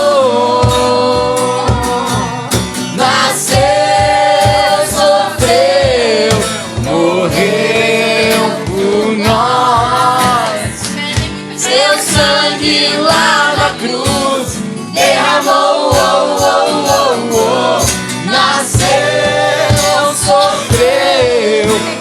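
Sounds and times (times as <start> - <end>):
acoustic guitar: 0.0 - 22.0
cajon steady beat: 0.0 - 22.0
voices singing worship song: 0.0 - 22.0.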